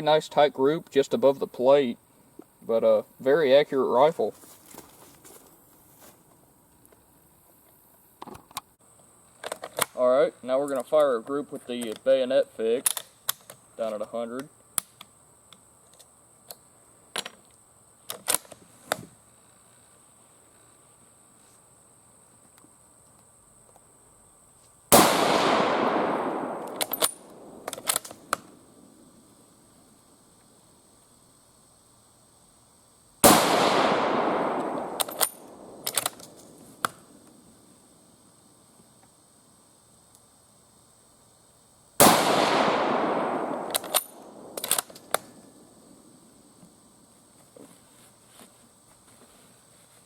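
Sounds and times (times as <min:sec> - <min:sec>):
rifle shot with echo: 0:24.9 - 0:28.5, 0:33.2 - 0:36.3, 0:42.0 - 0:45.7
rifle bolt metallic clicks: 0:25.4 - 0:28.5, 0:33.8 - 0:37.0, 0:42.4 - 0:45.3.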